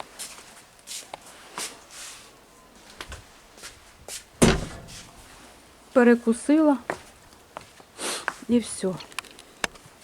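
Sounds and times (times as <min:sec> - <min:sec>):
soft rustles and clicks: 0:00.0 - 0:05.6
loud thump: 0:04.4 - 0:05.2.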